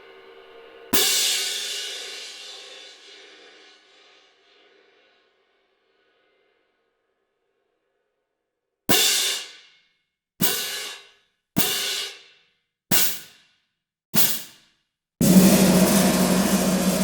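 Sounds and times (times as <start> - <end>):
cymbal hits: 15.2 - 17.0.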